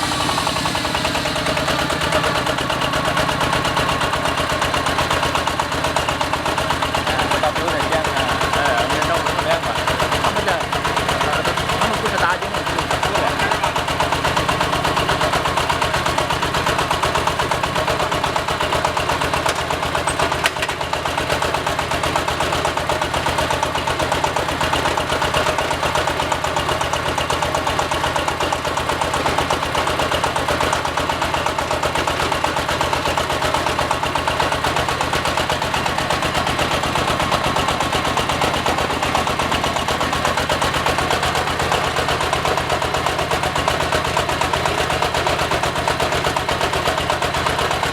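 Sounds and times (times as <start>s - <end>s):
steady hum: 0.0s - 4.8s
diesel engine clattering: 0.0s - 47.9s.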